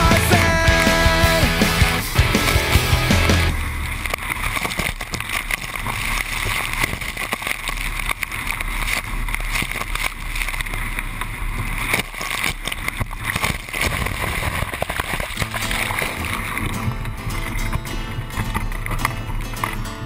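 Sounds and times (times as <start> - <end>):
water rushing along hulls: 0.0 - 20.0
wind buffeting microphone: 13.0 - 20.0.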